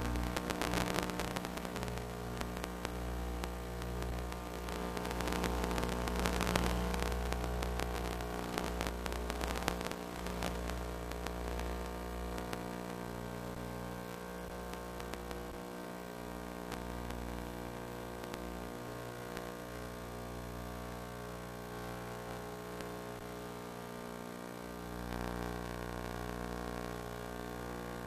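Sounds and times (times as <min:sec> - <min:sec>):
electrical hum: 0:00.0 - 0:20.4
static hiss and crackling clicks: 0:00.0 - 0:28.0.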